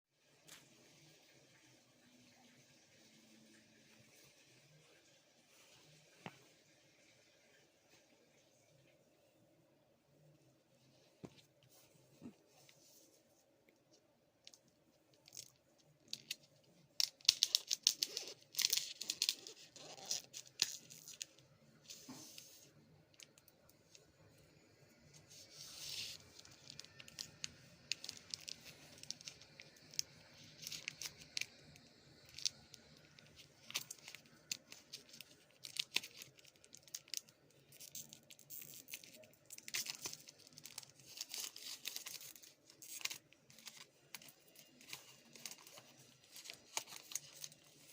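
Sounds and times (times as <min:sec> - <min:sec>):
packaging tearing and crinkling: 0:17.0 - 0:21.2, 0:26.0 - 0:47.9.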